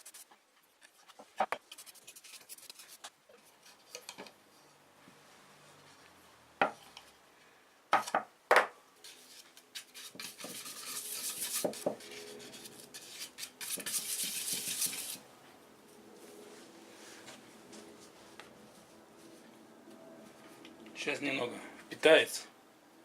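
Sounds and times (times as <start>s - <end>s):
scratchy rubbing: 0.0s - 0.3s, 1.6s - 3.8s, 9.0s - 15.2s.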